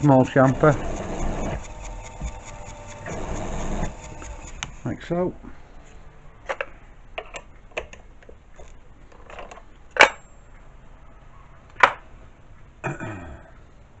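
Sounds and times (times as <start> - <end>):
sharp metal knocks: 0.0 - 4.8.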